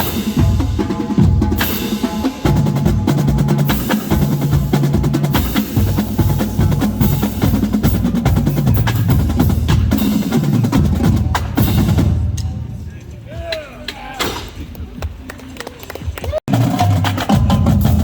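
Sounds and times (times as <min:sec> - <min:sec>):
snare drums playing: 0:00.0 - 0:12.5
bass drums at different pitches: 0:00.0 - 0:12.8, 0:16.5 - 0:18.0.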